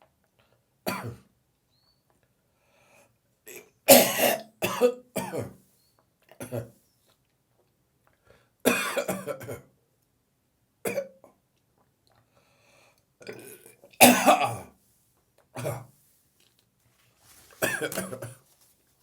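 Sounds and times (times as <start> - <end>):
person coughing: 0.9 - 1.2, 3.9 - 5.5, 8.7 - 9.6, 14.0 - 14.7, 17.6 - 18.4.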